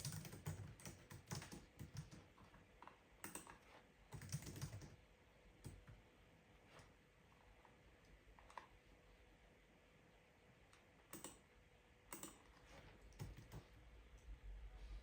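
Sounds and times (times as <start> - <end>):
computer keyboard keystrokes: 0.0 - 5.0, 11.1 - 11.4, 12.1 - 13.7.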